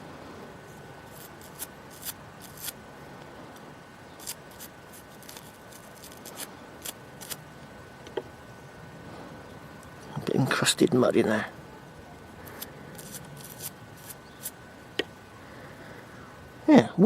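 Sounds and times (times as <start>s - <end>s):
background hiss: 0.0s - 17.0s
light scratching on metal: 12.5s - 14.6s.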